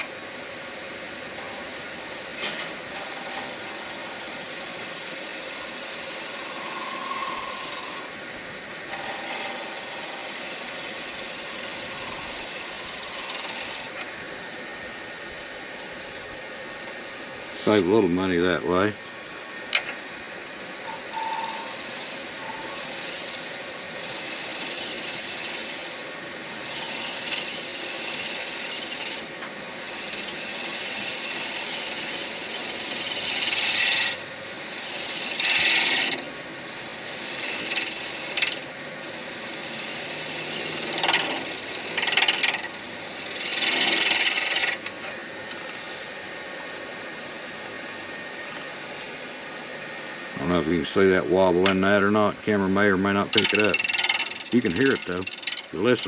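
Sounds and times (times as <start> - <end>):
lathe running: 0.0 - 56.0
turning tool scraping acrylic: 1.4 - 8.1, 8.9 - 14.0, 21.0 - 46.1, 53.2 - 56.0.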